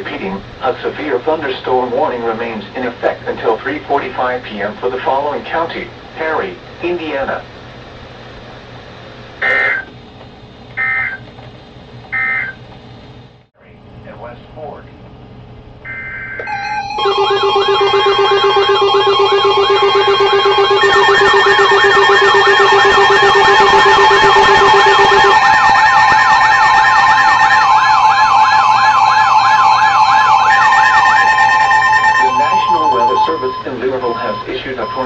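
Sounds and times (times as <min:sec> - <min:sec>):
steady alarm tones: 0:10.8 - 0:11.3, 0:12.1 - 0:12.6, 0:15.8 - 0:35.0
warbling siren tone: 0:15.9 - 0:35.0.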